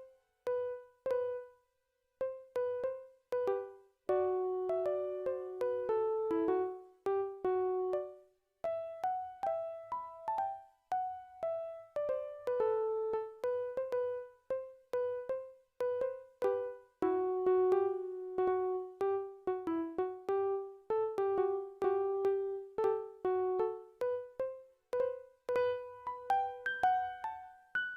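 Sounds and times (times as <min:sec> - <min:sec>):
simple keyboard melody: 0:00.0 - 0:27.9.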